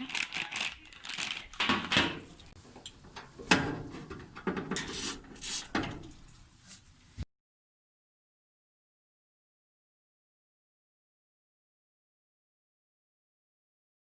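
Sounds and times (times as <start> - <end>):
rubbing and scraping objects: 0.0 - 7.2.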